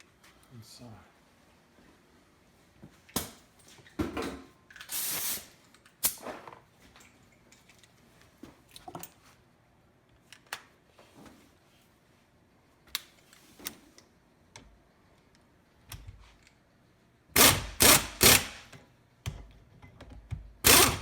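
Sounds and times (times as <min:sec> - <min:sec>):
hand tools and metal parts clicking: 0:19.8 - 0:21.0.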